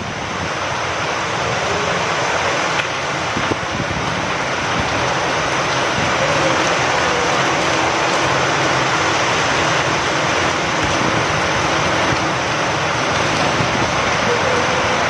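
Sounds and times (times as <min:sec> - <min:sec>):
rain falling: 0:00.0 - 0:15.0
wind blowing: 0:00.0 - 0:15.0.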